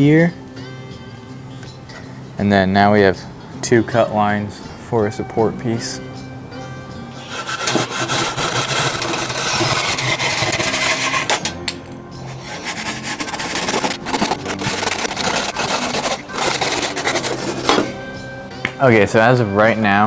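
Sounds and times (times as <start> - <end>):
hand saw cutting wood: 7.2 - 18.0.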